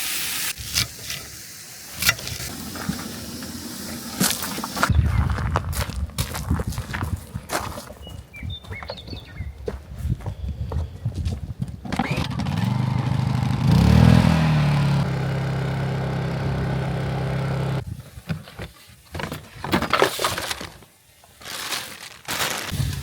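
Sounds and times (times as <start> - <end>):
engine humming: 2.0 - 4.9, 11.9 - 17.8.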